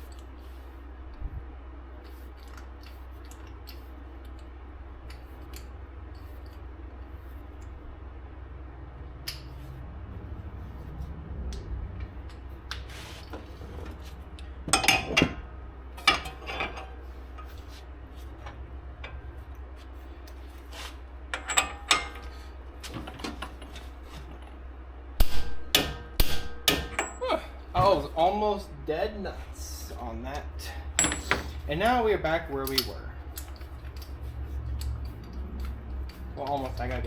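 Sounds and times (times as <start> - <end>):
steady low hum: 0.0 - 37.0
metal tools clinking and clanking: 14.7 - 15.4, 16.0 - 17.7, 21.3 - 24.6, 26.9 - 28.1, 30.7 - 37.0.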